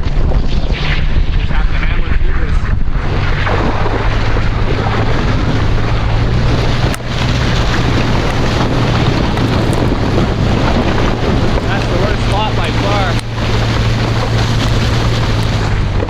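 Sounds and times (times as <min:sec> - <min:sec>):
car engine running: 0:01.5 - 0:16.0
chained tyres rushing through slush: 0:03.2 - 0:16.0.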